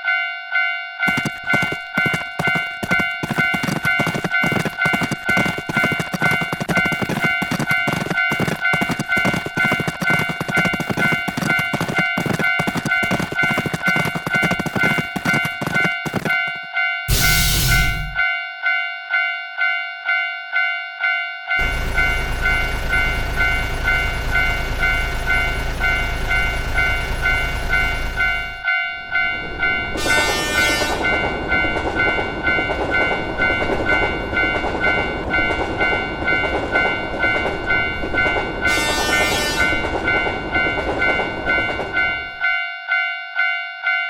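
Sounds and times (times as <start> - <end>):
level crossing bell ringing: 0.0 - 44.0
train passing clattering: 1.0 - 18.2, 21.6 - 42.6
train horn blasts: 29.8 - 31.3, 38.6 - 39.9.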